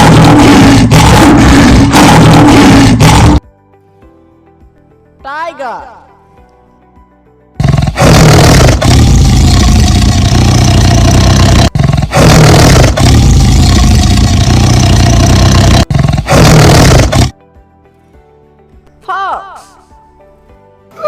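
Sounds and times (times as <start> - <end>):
tiger roaring: 0.0 - 3.4, 7.6 - 17.3.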